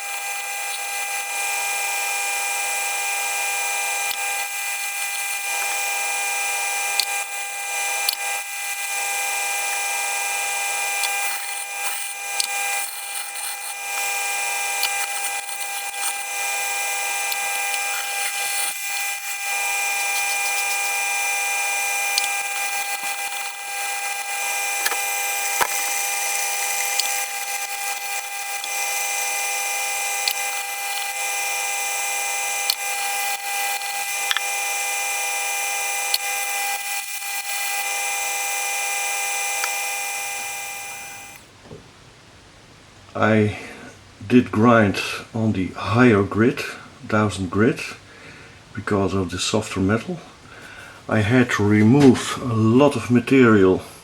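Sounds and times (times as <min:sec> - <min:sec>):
knife grinding on sharpening wheel: 0:00.0 - 0:01.6, 0:03.0 - 0:41.4.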